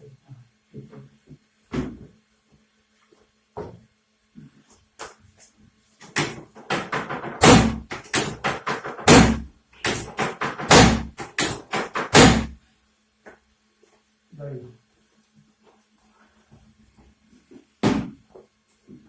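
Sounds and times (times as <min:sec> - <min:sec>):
heavy thumps and slaps: 0:06.0 - 0:12.6.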